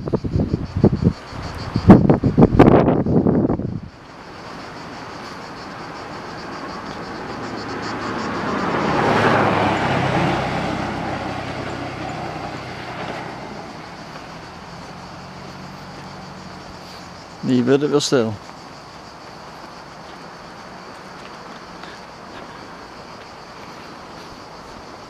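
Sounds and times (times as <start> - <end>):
car driving past: 4.1 - 17.4.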